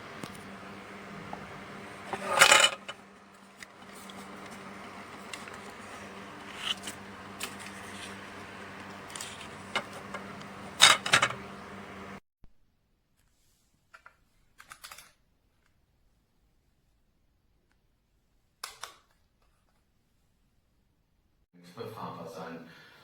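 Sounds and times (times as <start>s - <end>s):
steady hum: 0.0s - 12.2s.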